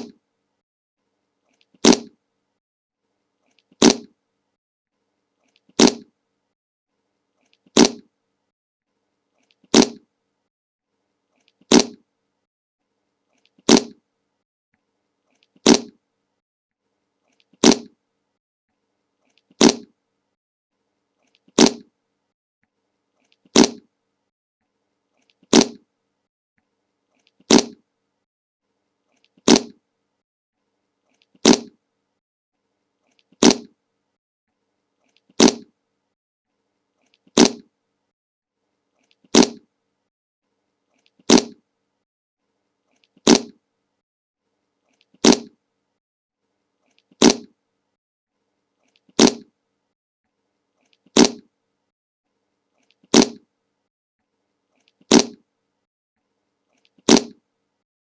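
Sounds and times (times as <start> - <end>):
short fart sound: 1.8 - 2.2, 3.8 - 4.1, 5.8 - 6.1, 7.8 - 8.1, 9.7 - 10.0, 11.7 - 12.0, 13.7 - 14.0, 15.6 - 16.0, 17.6 - 18.0, 19.6 - 19.9, 21.6 - 21.9, 23.6 - 23.8, 25.5 - 25.8, 27.5 - 27.8, 29.5 - 29.8, 31.4 - 31.8, 33.4 - 33.7, 35.4 - 35.7, 37.4 - 37.7, 39.3 - 39.6, 41.3 - 41.6, 43.3 - 43.6, 45.2 - 45.6, 47.2 - 47.5, 49.2 - 49.5, 51.2 - 51.5, 53.1 - 53.4, 55.1 - 55.4, 57.1 - 57.4.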